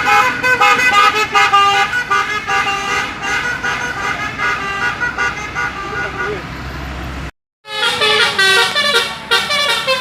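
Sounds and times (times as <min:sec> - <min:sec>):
musical air horn melody: 0:07.6 - 0:10.0.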